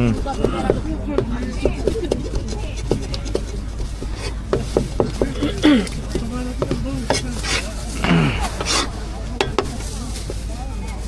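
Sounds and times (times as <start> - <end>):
steady low hum: 0.0 - 10.9
people talking in background: 0.0 - 11.0
knife cutting on cutting board: 1.8 - 7.8, 8.4 - 9.7.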